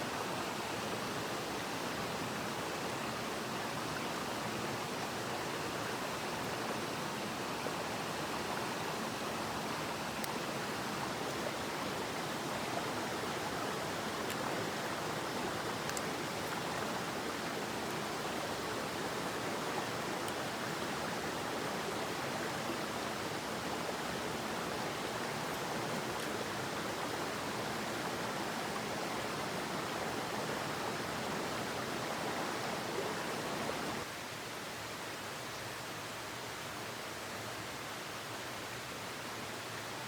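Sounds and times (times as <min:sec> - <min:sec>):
mountain stream rushing: 0:00.0 - 0:40.0
faint clicks: 0:15.8 - 0:16.9.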